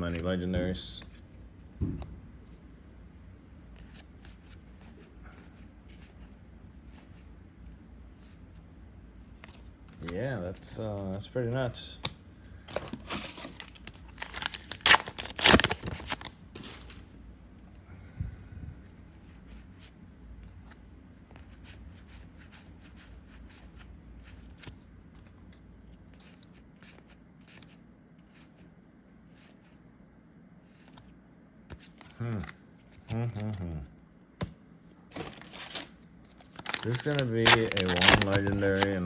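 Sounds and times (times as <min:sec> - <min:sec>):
wrapper ripping open: 0:13.0 - 0:17.0, 0:35.2 - 0:39.0
cards clicking: 0:35.2 - 0:39.0.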